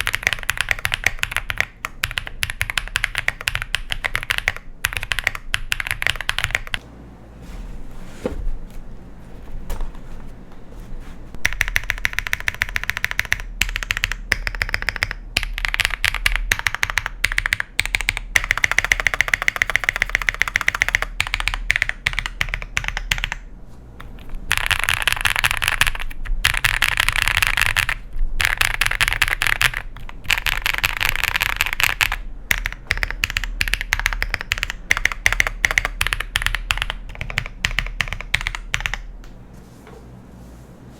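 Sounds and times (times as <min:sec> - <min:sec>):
mechanical keyboard typing: 0:00.0 - 0:06.8, 0:11.4 - 0:39.1.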